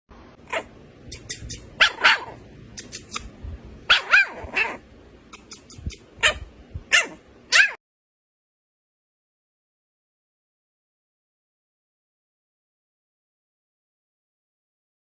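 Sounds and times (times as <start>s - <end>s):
puppies barking: 0.4s - 3.2s, 3.8s - 7.8s
puppies yapping: 0.4s - 3.3s, 3.9s - 7.8s.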